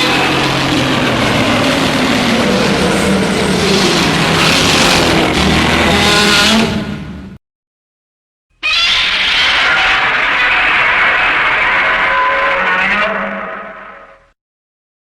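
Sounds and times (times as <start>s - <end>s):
monster roar sound effect: 8.6s - 14.4s.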